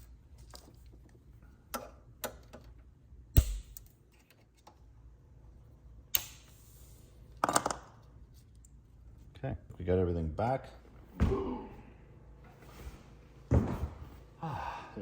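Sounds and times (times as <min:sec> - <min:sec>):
heavy thud: 0:11.2 - 0:11.7.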